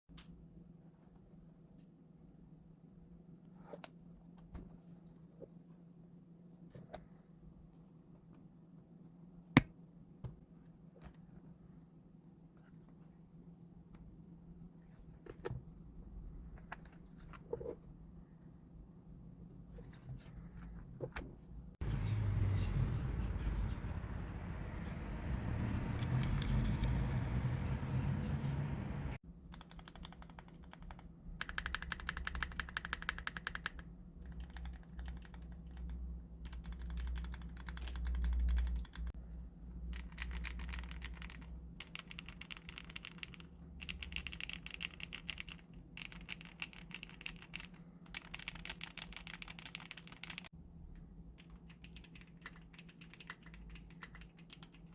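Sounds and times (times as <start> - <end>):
typing on mechanical keyboard: 29.5 - 39.1, 39.9 - 50.5, 51.4 - 54.9.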